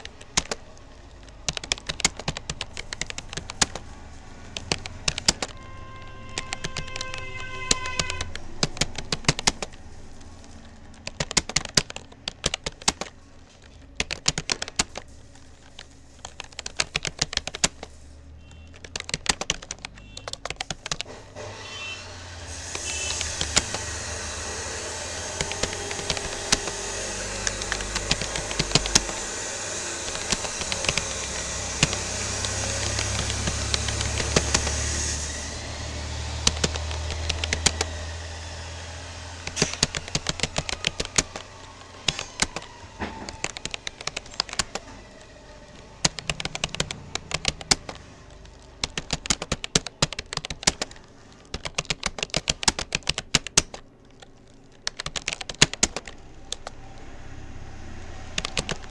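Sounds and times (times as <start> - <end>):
keyboard key clicks: 0.0 - 56.8, 58.3 - 58.9
loud steady rumble and hiss: 20.7 - 49.0.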